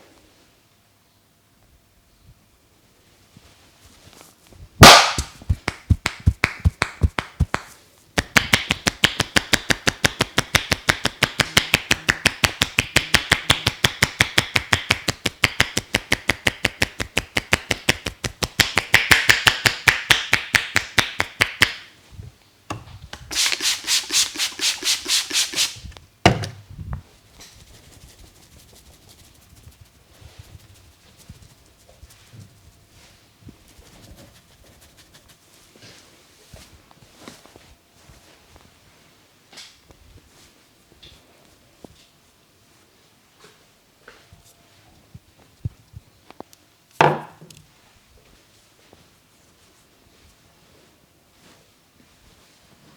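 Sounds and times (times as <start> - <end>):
rapid hand strikes on head: 4.8 - 21.8.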